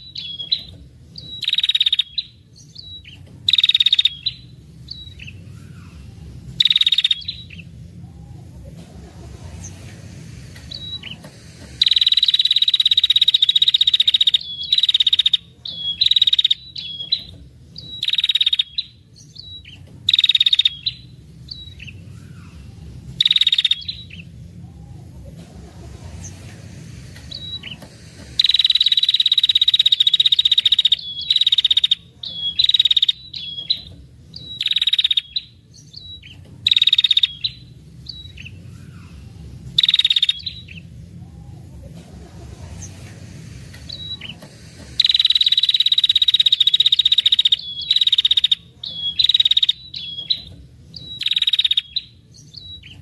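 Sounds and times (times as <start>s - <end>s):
bird rattling trill calls: 0.0s - 5.8s, 6.6s - 7.6s, 10.7s - 22.0s, 23.1s - 24.2s, 27.3s - 38.5s, 39.8s - 40.8s, 43.9s - 52.1s.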